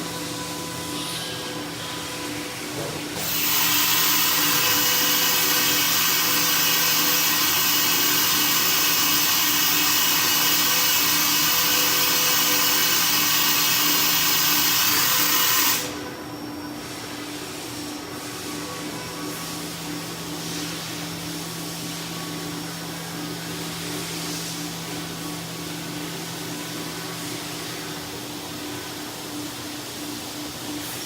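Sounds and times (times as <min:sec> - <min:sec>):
high whirring hiss: 0:03.2 - 0:16.1.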